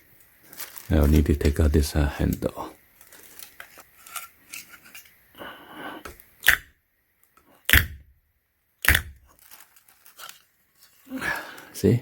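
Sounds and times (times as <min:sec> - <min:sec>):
light handling rustle: 0:00.2 - 0:05.2, 0:09.3 - 0:12.0
sharp plastic knocks: 0:06.1 - 0:06.8, 0:07.7 - 0:08.1, 0:08.8 - 0:09.3.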